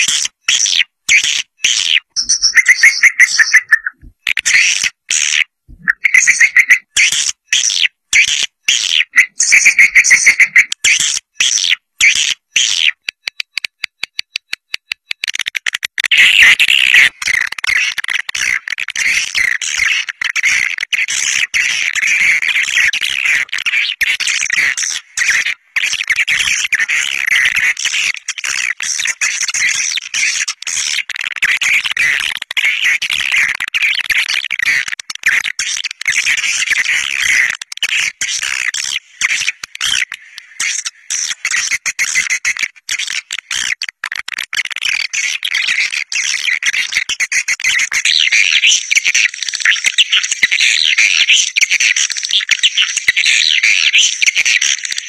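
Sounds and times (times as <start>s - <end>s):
swiftlets twittering: 2.0s - 4.6s, 5.7s - 7.3s.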